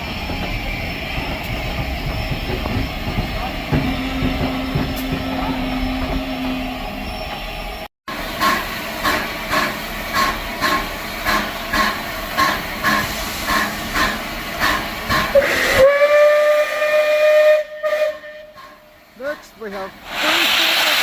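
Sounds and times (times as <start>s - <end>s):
rhythmic steam beats: 8.1s - 16.8s, 18.6s - 21.0s
steam locomotive hiss: 8.1s - 21.0s
steam whistle: 15.3s - 18.8s.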